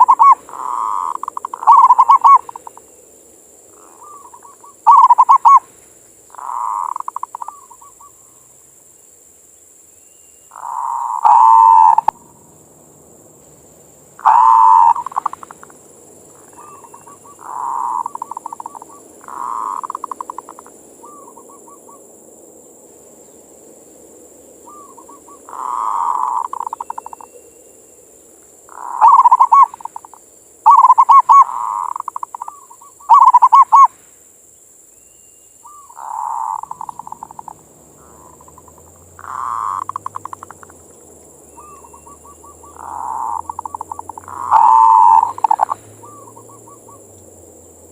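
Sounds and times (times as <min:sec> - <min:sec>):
dove cooing trills: 0:00.0 - 0:02.8, 0:03.7 - 0:05.7, 0:06.3 - 0:08.2, 0:10.5 - 0:12.4, 0:14.2 - 0:22.1, 0:24.6 - 0:27.5, 0:28.7 - 0:33.9, 0:35.6 - 0:47.2.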